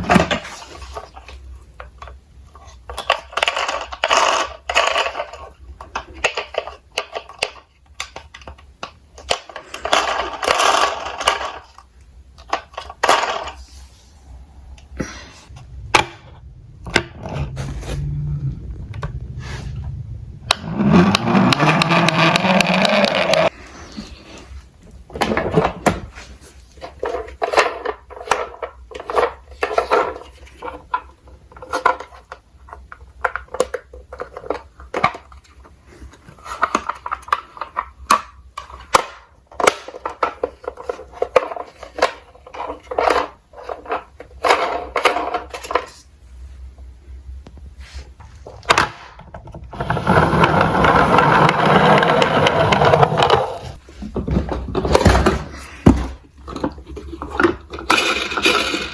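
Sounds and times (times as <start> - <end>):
toy cars clattering on track: 0.0 - 8.6, 9.2 - 13.7, 20.5 - 23.5, 26.8 - 35.6, 36.4 - 46.1, 48.6 - 53.8, 54.6 - 58.9.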